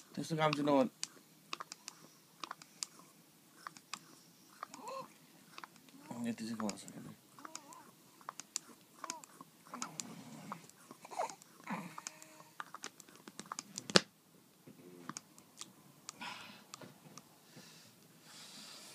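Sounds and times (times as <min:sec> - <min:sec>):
baby mouth clicks and smacks: 0:00.5 - 0:03.0, 0:05.6 - 0:06.0, 0:07.4 - 0:14.0
baby squeaky vocal sounds: 0:04.6 - 0:05.2, 0:11.0 - 0:11.4.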